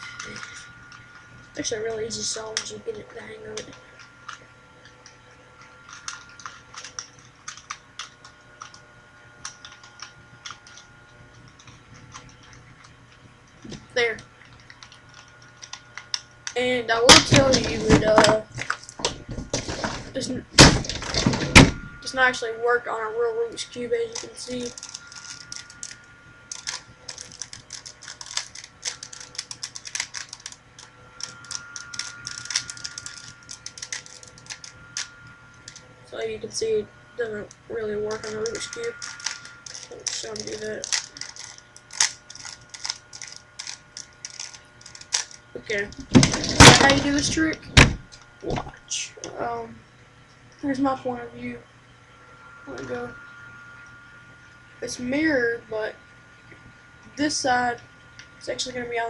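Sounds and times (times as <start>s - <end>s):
faint steady hum: 0.0s - 59.0s
faint high tone: 50.6s - 53.8s.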